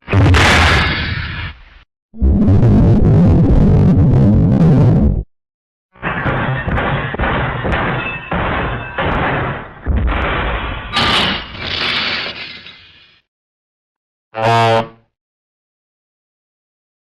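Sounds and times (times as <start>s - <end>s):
heavy crashing and smashing: 6.0s - 12.5s.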